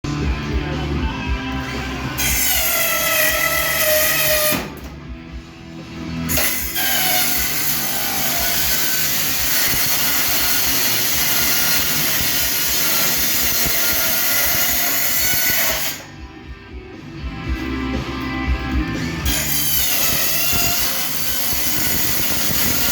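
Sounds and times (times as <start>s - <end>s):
power tool whining on sheet metal: 6.2s - 16.1s, 19.1s - 22.9s.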